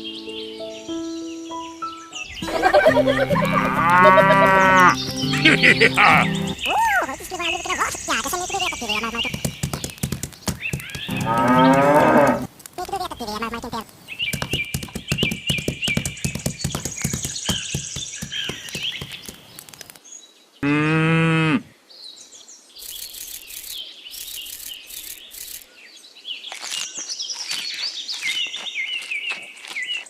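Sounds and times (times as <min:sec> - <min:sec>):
small birds chirping: 0:00.0 - 0:20.6, 0:21.9 - 0:30.0
farm animal call: 0:02.4 - 0:09.4, 0:11.1 - 0:12.5, 0:20.6 - 0:21.7
sharp clicks: 0:08.0 - 0:17.5.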